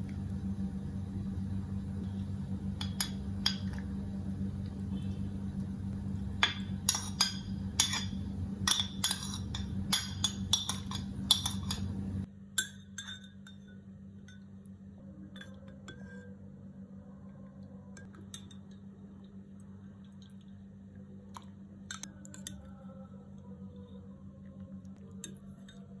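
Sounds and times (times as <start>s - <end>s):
steady low hum: 0.0s - 26.0s
spoon clinking against glass: 6.4s - 11.9s, 12.6s - 14.5s.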